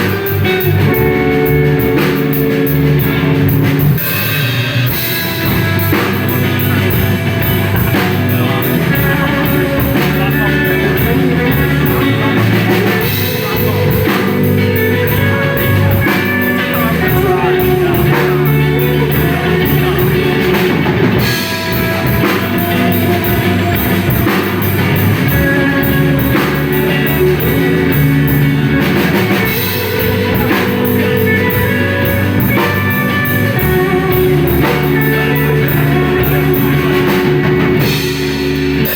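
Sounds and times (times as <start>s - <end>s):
bass guitar: 0.0s - 38.9s
drum kit beat: 0.0s - 38.9s
electric guitars: 0.0s - 38.9s.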